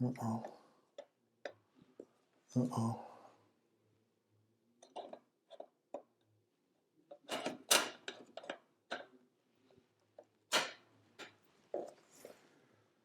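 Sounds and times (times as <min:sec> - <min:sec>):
small parts clicking and tapping: 0:04.8 - 0:06.1, 0:07.1 - 0:09.2.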